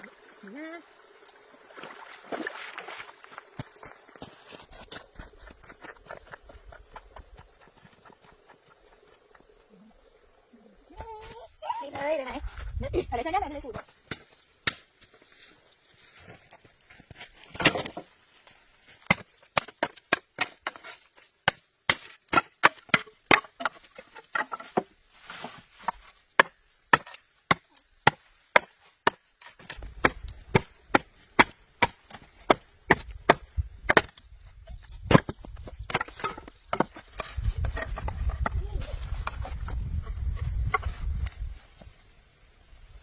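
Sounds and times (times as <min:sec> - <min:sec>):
wood being chopped: 0:13.8 - 0:14.9, 0:17.5 - 0:18.0, 0:19.0 - 0:24.9, 0:25.9 - 0:34.2, 0:34.8 - 0:39.9.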